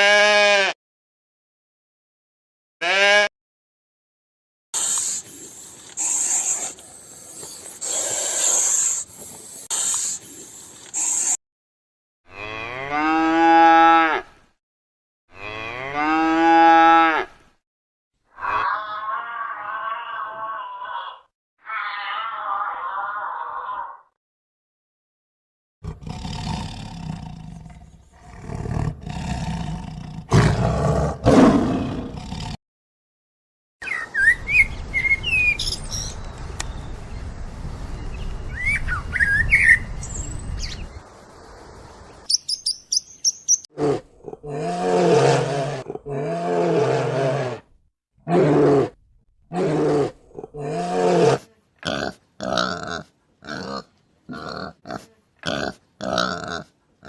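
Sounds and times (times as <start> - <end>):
low roar-like animal call: 18.4 - 24.1, 25.8 - 32.6, 43.7 - 51.4
birds chirping: 33.8 - 43.7.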